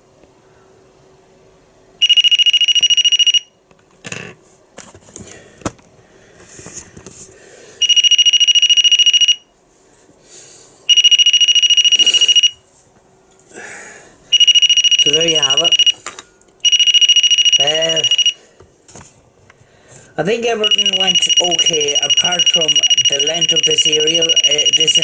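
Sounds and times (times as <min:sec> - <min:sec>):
high-pitched pulsing alarm buzzer: 0:02.0 - 0:03.5, 0:07.8 - 0:09.4, 0:10.9 - 0:12.6, 0:14.3 - 0:16.0, 0:16.6 - 0:18.4, 0:20.6 - 0:25.0.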